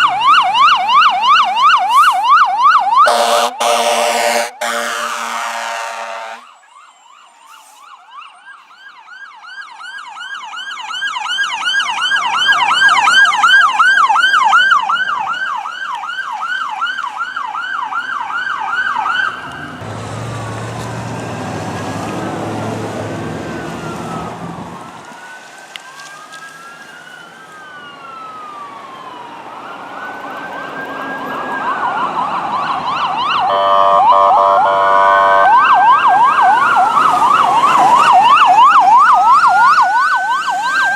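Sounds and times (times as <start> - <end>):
wail sirens: 0.0 - 40.9
yelp siren: 0.0 - 40.9
horn blast: 3.1 - 6.4, 33.5 - 35.6
heavy vehicle engine rumble: 19.2 - 25.1.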